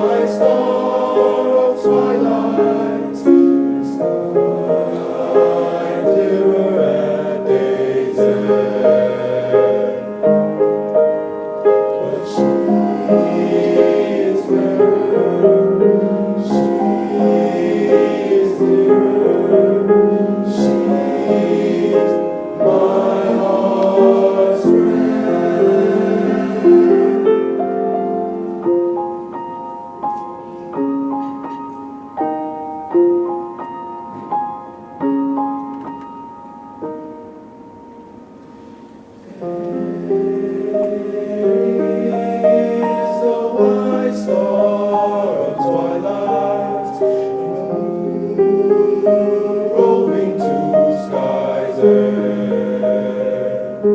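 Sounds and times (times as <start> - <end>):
male choir singing: 0.0 - 10.6, 11.8 - 27.7, 39.2 - 53.9
piano: 0.0 - 53.9.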